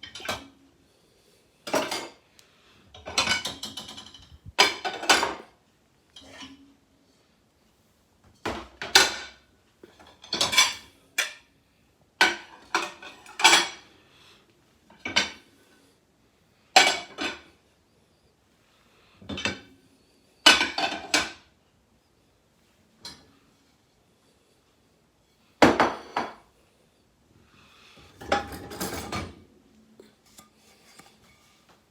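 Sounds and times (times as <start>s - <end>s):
dishes and cutlery clinking: 1.6s - 2.2s, 3.0s - 5.6s, 8.3s - 11.5s, 12.2s - 13.9s, 16.8s - 17.5s, 20.4s - 21.5s, 23.0s - 23.4s, 28.1s - 31.6s.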